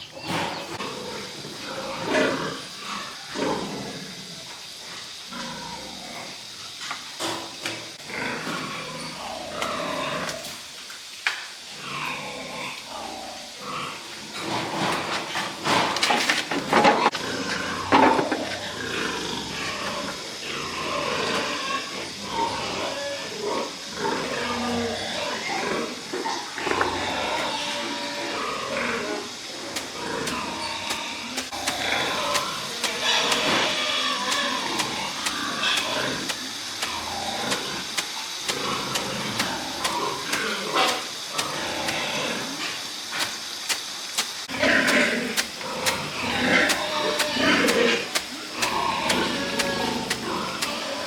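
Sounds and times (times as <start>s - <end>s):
pigs grunting and squealing: 0.0s - 4.5s, 5.1s - 6.5s, 7.3s - 10.6s, 11.7s - 51.0s
pig crying loudly: 30.0s - 42.1s, 44.6s - 51.0s.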